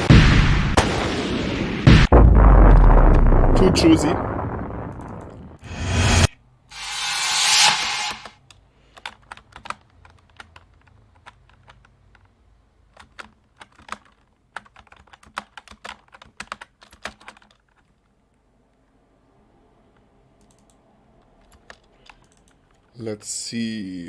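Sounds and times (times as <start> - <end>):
loud hissing noise burst: 5.6 - 8.3
computer keyboard clicking: 9.0 - 12.3, 12.9 - 17.9, 21.4 - 22.6.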